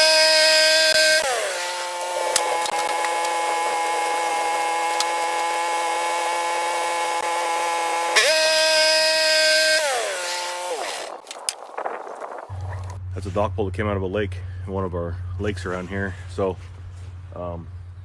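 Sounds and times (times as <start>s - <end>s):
wood-milling machine whine: 0.0s - 13.0s.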